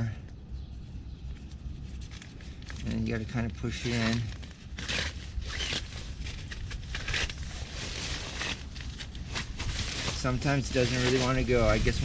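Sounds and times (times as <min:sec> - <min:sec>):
nylon fabric rustling and crinkling: 0:03.7 - 0:12.0.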